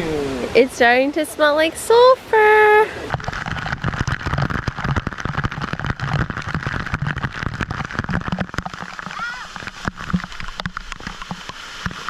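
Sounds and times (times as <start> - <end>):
water splashing and bubbling: 2.9 - 12.0.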